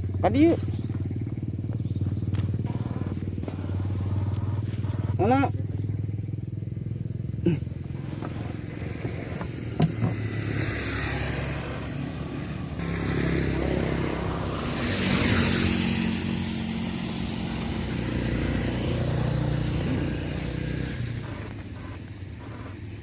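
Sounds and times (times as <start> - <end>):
small engine running: 0.0 - 23.0
rush of noise: 10.3 - 19.3.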